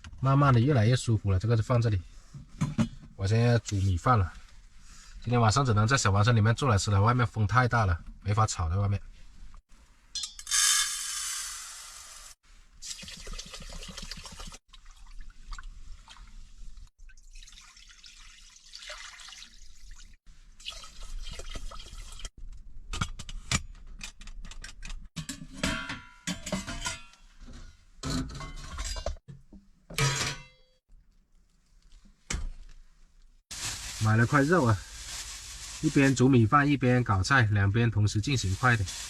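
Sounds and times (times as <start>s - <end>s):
water pouring into a pot: 12.8s - 16.3s, 17.0s - 22.3s
pots and utensils clinking: 25.2s - 29.2s, 29.9s - 30.7s.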